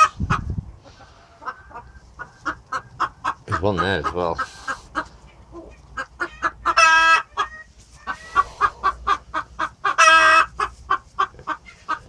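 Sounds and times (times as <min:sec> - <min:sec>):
chicken squawks: 0:00.0 - 0:12.0
chickens clucking: 0:00.0 - 0:12.0.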